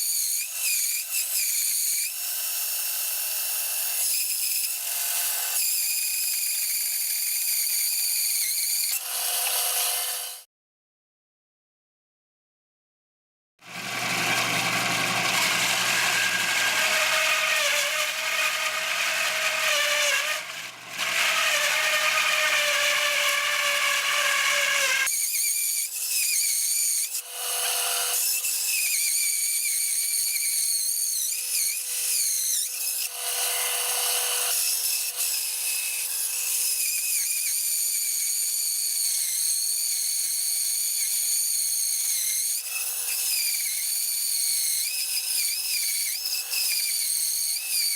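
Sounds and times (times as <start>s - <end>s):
band saw humming: 13.7s - 25.1s.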